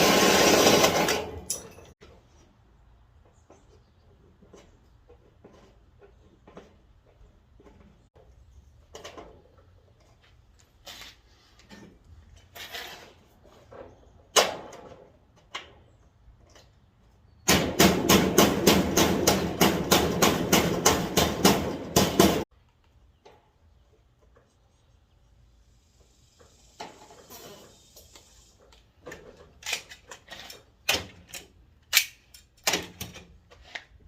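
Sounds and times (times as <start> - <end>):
power drill cutting metal gutter: 0.0 - 1.5.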